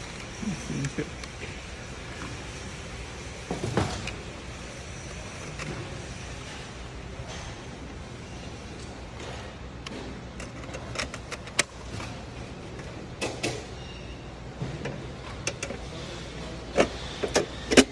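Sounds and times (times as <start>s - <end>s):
computer hardware clicks and knocks: 9.2s - 12.0s.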